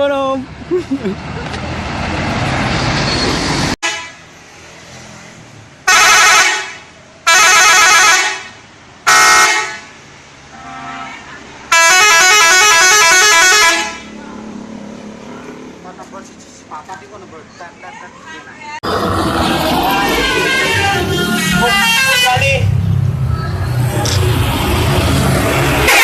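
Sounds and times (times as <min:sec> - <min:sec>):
multi-tone musical bus horn: 0:03.8 - 0:04.2, 0:05.8 - 0:09.9, 0:10.5 - 0:14.1, 0:20.0 - 0:22.7, 0:25.8 - 0:26.0
loud rushing noise: 0:18.8 - 0:26.0.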